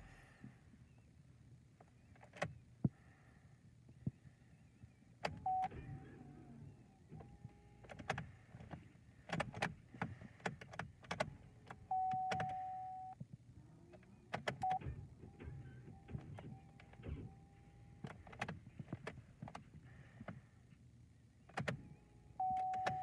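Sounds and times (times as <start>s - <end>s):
car electronic beeps: 5.3s - 5.9s, 11.9s - 13.2s, 14.5s - 17.8s, 22.4s - 23.0s.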